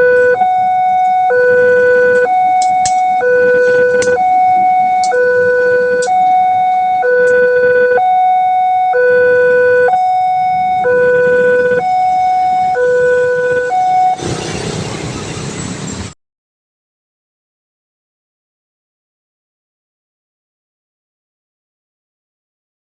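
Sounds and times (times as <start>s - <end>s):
level crossing two-tone siren: 0.0s - 14.4s
loud rushing noise: 12.9s - 16.2s.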